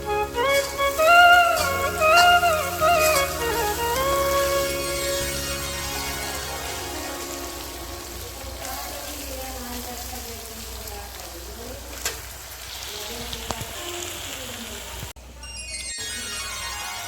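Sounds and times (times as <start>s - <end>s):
faint music: 0.0s - 12.0s
steady rain falling: 0.0s - 15.2s.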